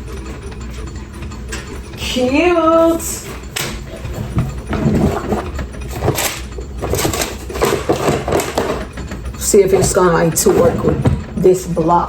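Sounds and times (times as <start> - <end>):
plastic parts clicking and rattling: 2.9 - 12.0.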